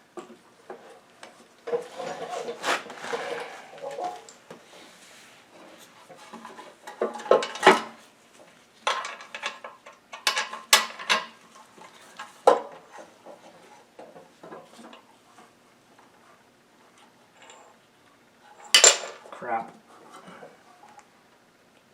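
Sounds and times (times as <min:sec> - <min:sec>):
metal tools clinking: 0:18.6 - 0:19.3.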